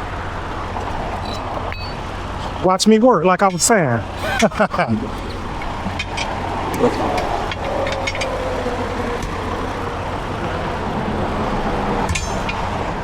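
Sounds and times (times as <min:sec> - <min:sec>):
highway traffic rumble: 0:00.0 - 0:13.0
passing vehicle whine: 0:03.2 - 0:13.0.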